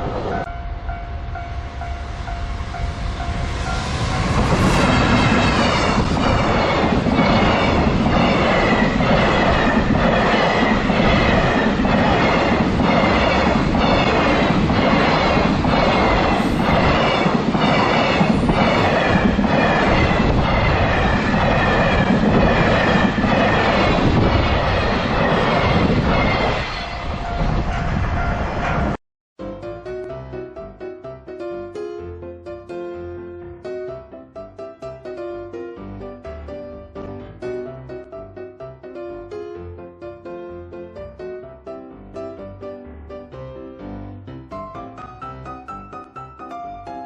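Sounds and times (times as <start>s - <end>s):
train rumble: 0.0s - 29.0s.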